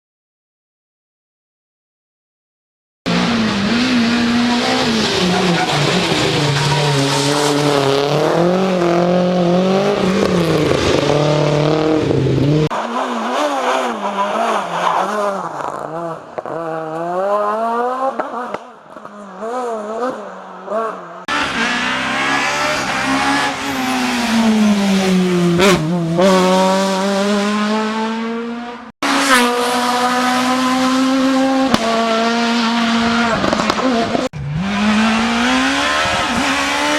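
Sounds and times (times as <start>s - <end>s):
rally car engines revving hard: 3.1s - 36.9s.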